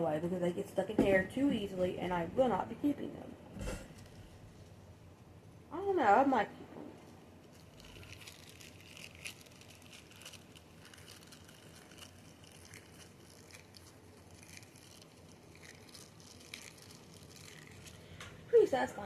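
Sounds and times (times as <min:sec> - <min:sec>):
sticky balls crackling and squishing: 0:07.0 - 0:19.0.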